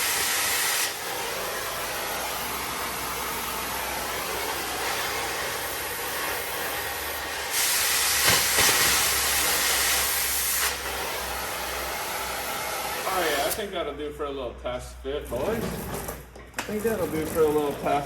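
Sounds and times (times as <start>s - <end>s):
cutting torch hissing: 0.0s - 13.8s.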